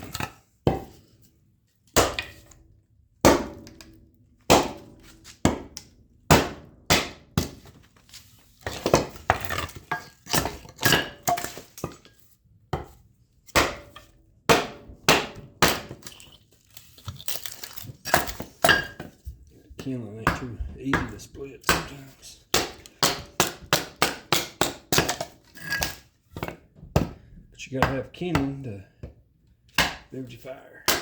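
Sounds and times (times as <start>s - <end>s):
blade chopping wood: 2.0s - 2.5s, 3.3s - 3.9s, 4.5s - 7.7s, 12.8s - 16.2s, 19.8s - 27.2s, 27.8s - 28.7s, 29.7s - 31.0s.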